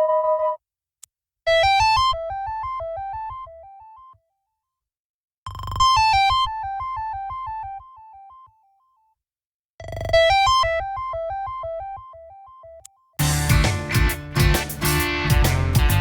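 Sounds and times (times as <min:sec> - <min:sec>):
pulsing synth bass: 0:13.2 - 0:16.0.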